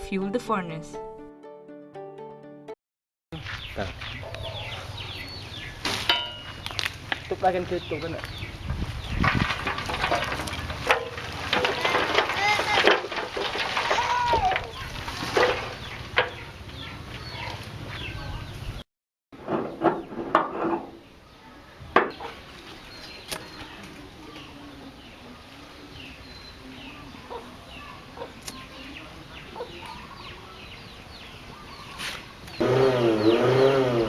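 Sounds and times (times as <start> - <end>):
birds chirping: 3.4 - 11.2, 13.8 - 18.8, 20.9 - 34.0.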